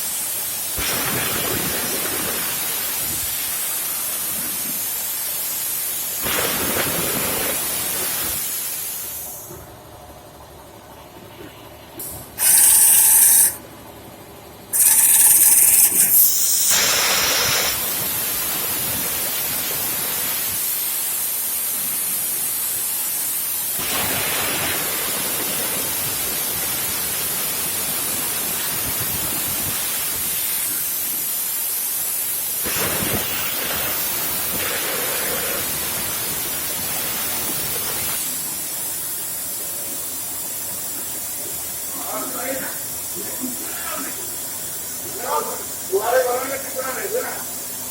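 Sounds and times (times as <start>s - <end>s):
plasma cutter hissing: 0.0s - 9.6s, 12.0s - 13.6s, 14.7s - 47.9s.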